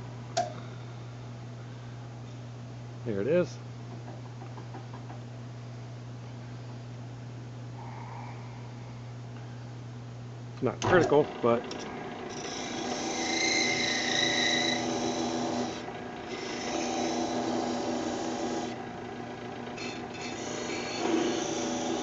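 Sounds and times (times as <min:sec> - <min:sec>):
drill press humming: 0:10.8 - 0:22.0
hacksaw rasping on spinning metal: 0:12.3 - 0:18.8, 0:19.8 - 0:22.0
metal squeal: 0:12.4 - 0:15.2.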